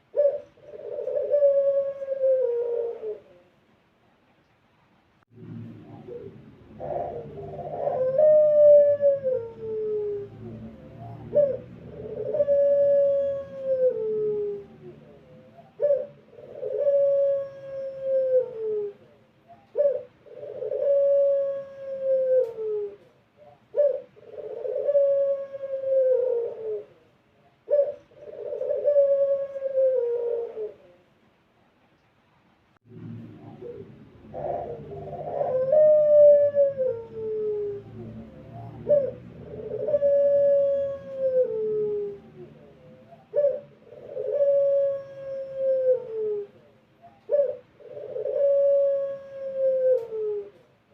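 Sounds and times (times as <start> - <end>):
turtle dove cooing: 0.0 - 3.7, 5.4 - 31.2, 32.9 - 50.9.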